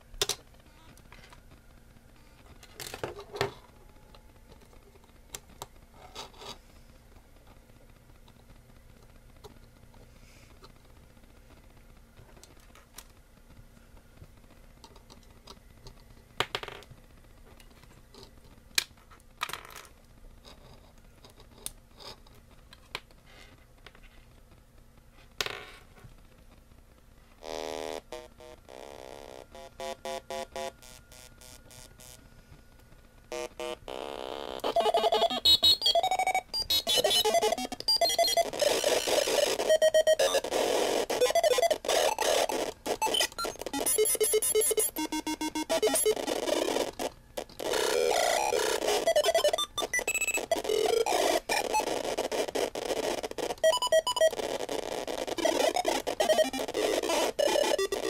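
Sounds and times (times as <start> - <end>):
faint steady hum: 0.0 - 58.0
electronic synth tones: 34.6 - 58.0.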